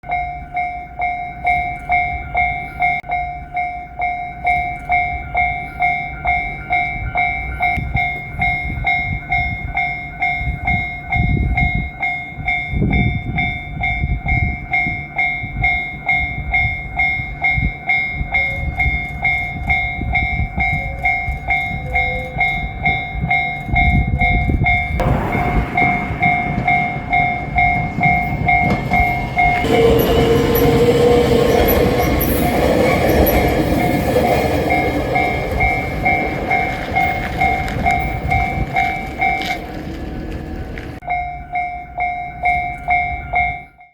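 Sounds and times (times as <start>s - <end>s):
railroad crossing bell ringing: 0.0s - 43.9s
electric train rumble: 0.1s - 43.6s.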